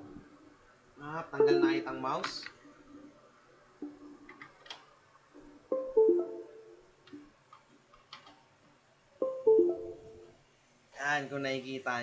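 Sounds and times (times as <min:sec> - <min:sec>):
plucked string music: 0:05.7 - 0:06.6, 0:09.2 - 0:10.1.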